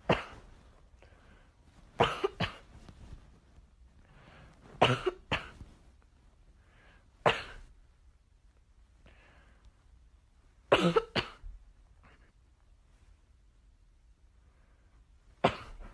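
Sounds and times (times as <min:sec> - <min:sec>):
person coughing: 0:00.0 - 0:00.5, 0:02.0 - 0:02.7, 0:04.8 - 0:05.6, 0:07.2 - 0:07.7, 0:10.7 - 0:11.5, 0:15.4 - 0:15.9.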